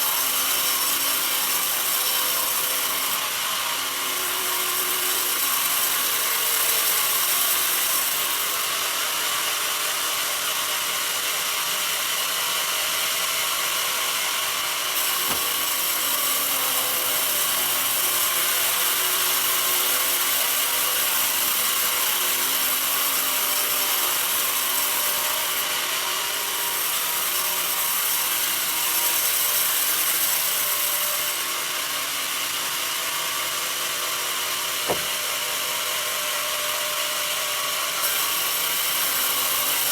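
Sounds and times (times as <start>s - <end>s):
band saw cutting log: 0.0s - 3.4s, 14.0s - 32.6s, 33.4s - 39.9s.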